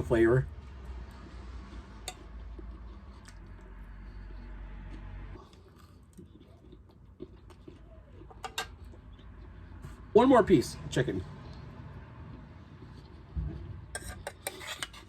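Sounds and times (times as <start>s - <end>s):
person chewing crispy food: 0.6s - 10.1s, 11.4s - 13.4s.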